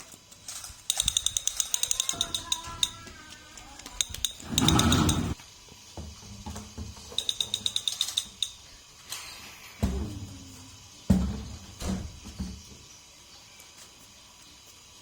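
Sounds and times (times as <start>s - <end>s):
toy blaster mechanism clicking: 0.0s - 5.4s, 7.2s - 9.3s.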